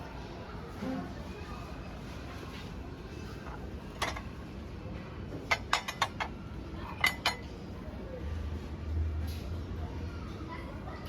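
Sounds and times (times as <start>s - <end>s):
kitchen utensils clinking: 5.5s - 6.3s, 6.9s - 7.5s.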